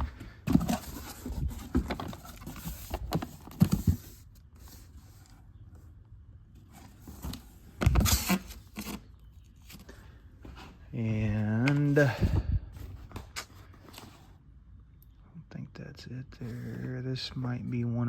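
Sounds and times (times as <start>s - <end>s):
boxes knocking and scraping: 0.0s - 4.8s.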